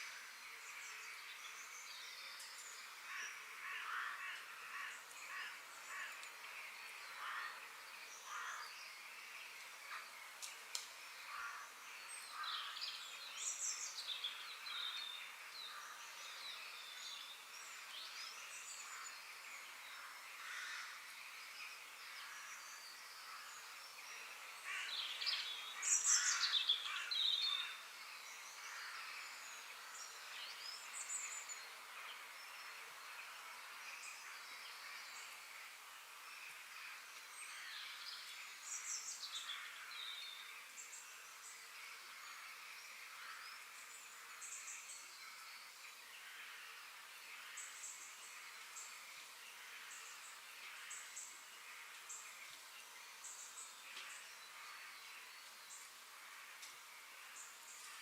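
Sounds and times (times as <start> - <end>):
faint hiss: 0.0 - 58.0
birds chirping and calling: 22.2 - 27.8.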